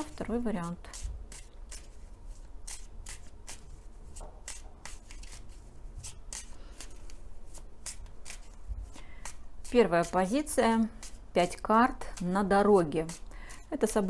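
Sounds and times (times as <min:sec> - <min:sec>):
cards being shuffled: 0:02.7 - 0:05.6.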